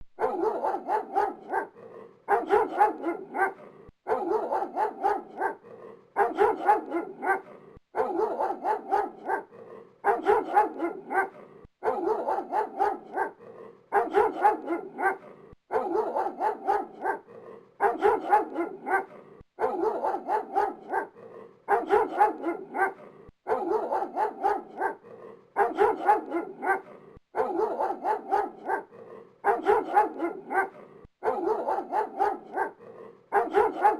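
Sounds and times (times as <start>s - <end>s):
dog barking: 0.2s - 33.9s.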